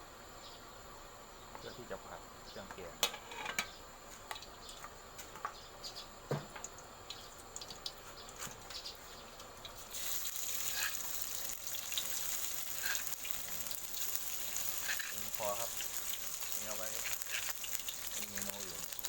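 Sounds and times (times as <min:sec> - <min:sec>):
curry paste sizzling in a wok: 0:09.7 - 0:19.0.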